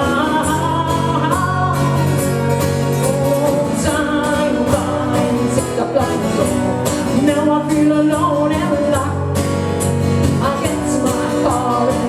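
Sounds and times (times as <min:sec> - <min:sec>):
person singing: 0:00.0 - 0:09.4, 0:10.3 - 0:12.0
acoustic guitar-led trio music: 0:00.0 - 0:12.0.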